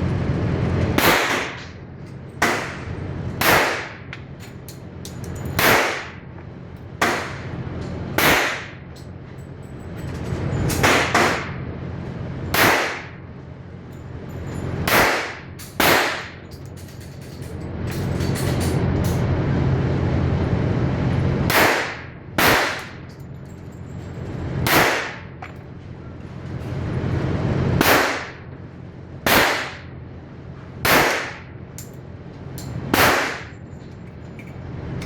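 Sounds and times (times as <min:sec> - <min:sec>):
steady low hum: 0:00.0 - 0:35.0
pistol shots with echo: 0:01.0 - 0:01.6, 0:03.4 - 0:04.0, 0:05.6 - 0:06.2, 0:08.2 - 0:08.8, 0:12.6 - 0:13.2, 0:14.9 - 0:16.4, 0:21.5 - 0:23.0, 0:24.7 - 0:25.3, 0:27.8 - 0:28.4, 0:29.3 - 0:29.9, 0:30.8 - 0:31.5, 0:32.9 - 0:33.5.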